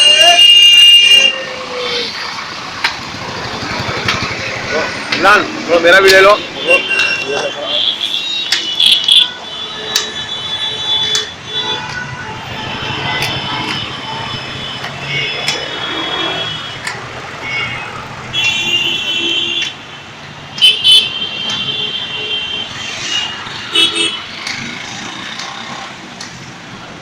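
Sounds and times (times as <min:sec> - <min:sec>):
vehicle horns honking: 0:00.0 - 0:01.5, 0:06.0 - 0:24.7
street traffic: 0:00.0 - 0:27.0.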